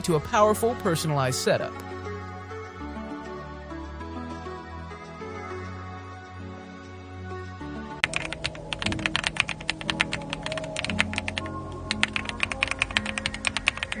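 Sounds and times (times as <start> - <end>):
background music: 0.0 - 14.0
mechanical keyboard typing: 8.0 - 14.0.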